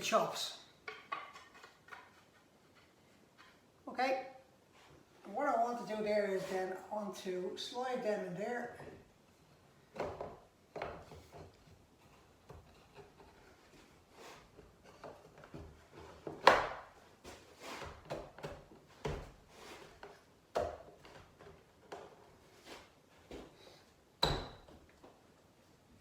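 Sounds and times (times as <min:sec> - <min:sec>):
wood scraping and knocking in a vise: 0:00.8 - 0:03.8, 0:09.9 - 0:23.5.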